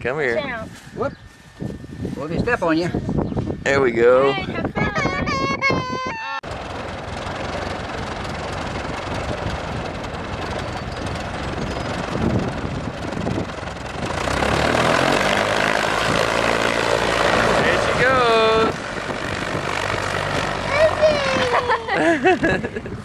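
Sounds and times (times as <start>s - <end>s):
propeller airplane engine: 6.1s - 23.0s.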